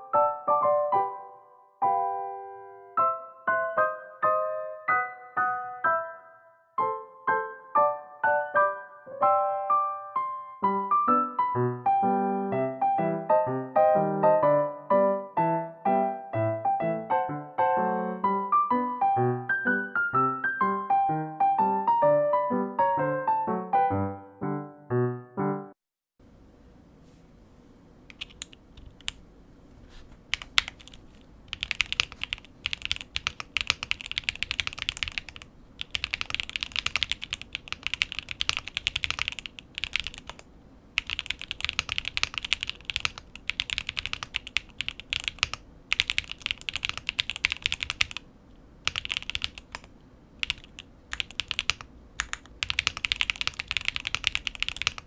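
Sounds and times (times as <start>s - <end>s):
mechanical keyboard typing: 28.1s - 29.2s, 30.3s - 48.2s, 48.8s - 55.0s.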